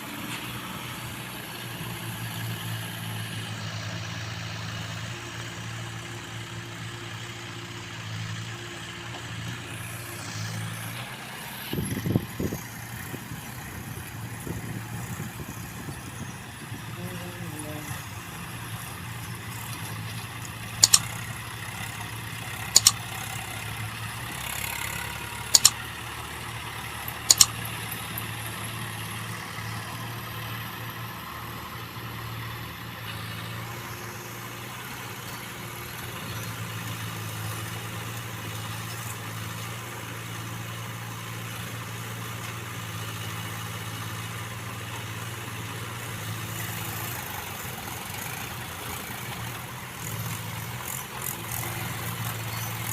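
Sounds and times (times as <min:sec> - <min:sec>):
diesel engine running: 0:00.0 - 0:52.9.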